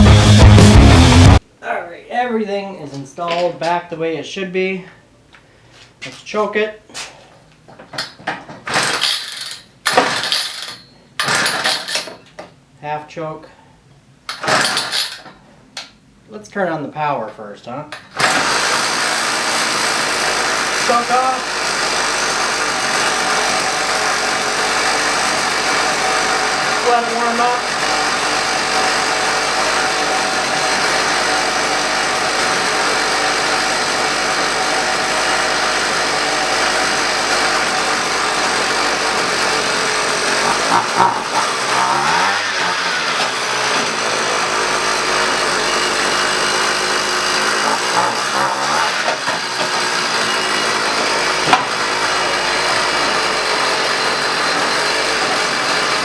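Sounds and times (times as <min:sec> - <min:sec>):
ice auger engine running and revving: 0:00.0 - 0:01.4, 0:08.7 - 0:12.1, 0:14.4 - 0:15.2, 0:18.2 - 0:56.0.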